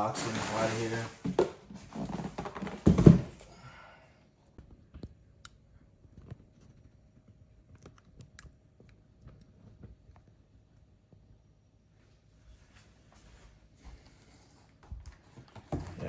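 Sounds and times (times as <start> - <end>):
cardboard rustling and scraping: 0.0 - 3.5, 15.2 - 16.0.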